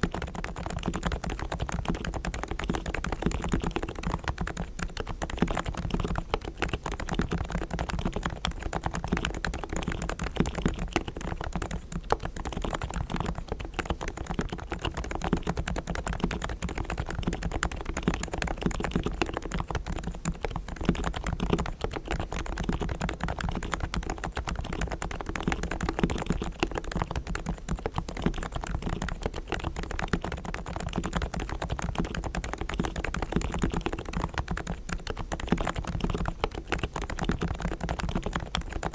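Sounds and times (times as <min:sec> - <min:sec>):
fast typing on keyboard: 0:00.0 - 0:38.9.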